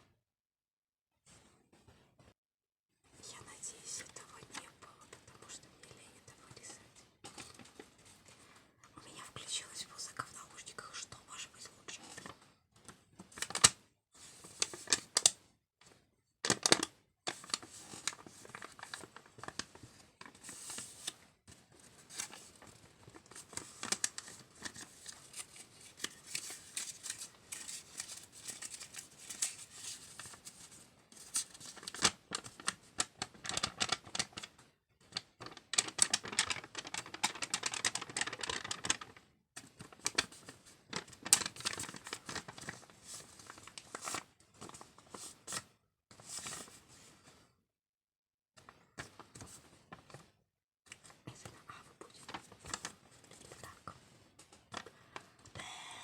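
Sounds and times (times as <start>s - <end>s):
paper crinkling: 12.0s - 15.4s, 16.4s - 34.5s, 35.2s - 46.8s, 52.2s - 53.7s.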